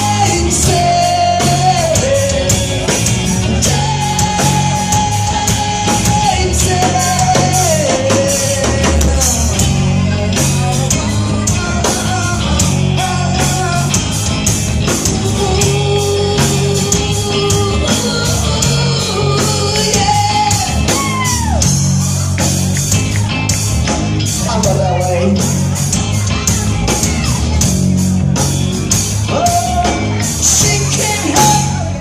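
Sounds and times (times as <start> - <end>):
person singing: 0.0 - 21.8, 29.2 - 32.0
guitar: 0.0 - 32.0
rock music: 0.0 - 32.0
steady drumbeat: 0.0 - 32.0.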